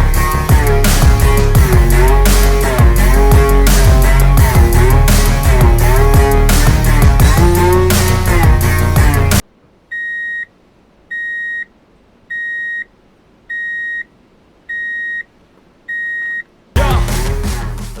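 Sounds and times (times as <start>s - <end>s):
music: 0.0s - 9.4s, 16.8s - 18.0s.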